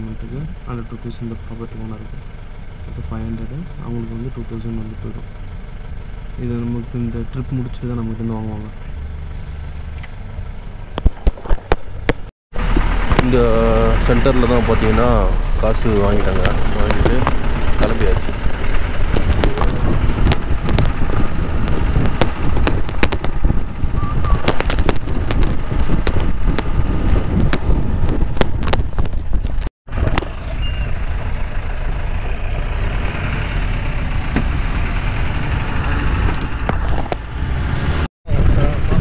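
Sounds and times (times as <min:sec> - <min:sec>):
off-road vehicle engine rumble: 0:00.0 - 0:39.0
body and suspension rattling: 0:00.3 - 0:37.4.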